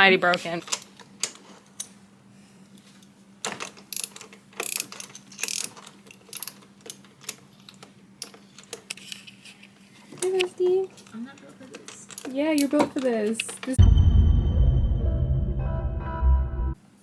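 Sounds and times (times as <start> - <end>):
socket ratchet clicking: 3.9 - 7.4.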